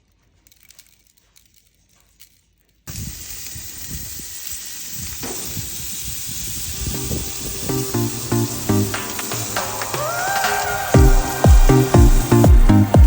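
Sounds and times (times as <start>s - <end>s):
meat sizzling on hot grill: 2.9s - 13.0s.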